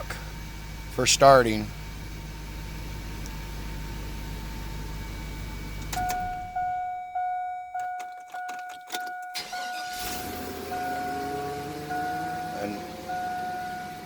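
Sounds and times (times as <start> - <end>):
truck engine running: 0.0 - 14.0
warning chime dinging: 5.9 - 14.0.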